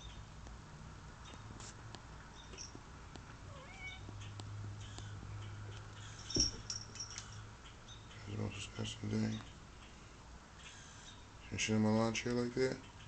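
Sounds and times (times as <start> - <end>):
bird chirping and mewing: 3.5 - 11.4.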